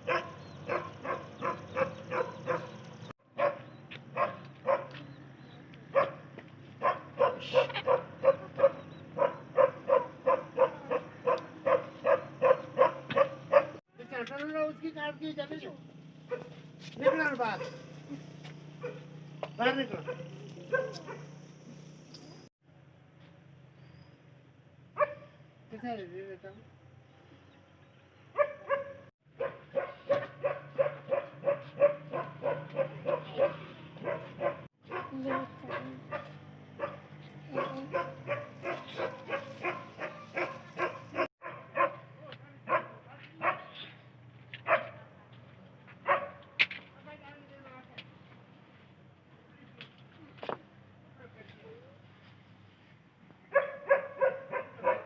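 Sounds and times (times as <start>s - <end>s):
dog barking: 0.0s - 5.2s, 5.9s - 13.8s, 16.3s - 18.0s, 18.8s - 19.2s, 20.0s - 21.4s, 25.0s - 25.4s, 28.3s - 43.9s, 44.6s - 45.1s, 46.0s - 46.6s, 53.5s - 55.0s.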